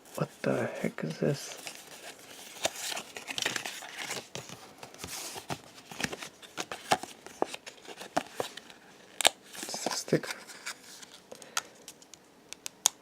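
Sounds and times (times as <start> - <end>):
paper rustling: 1.4 - 11.3.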